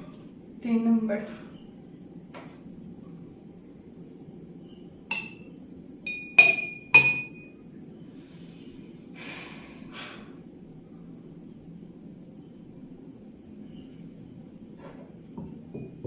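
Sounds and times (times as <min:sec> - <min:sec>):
drinking glasses clinking: 0:05.1 - 0:05.5, 0:06.1 - 0:07.5.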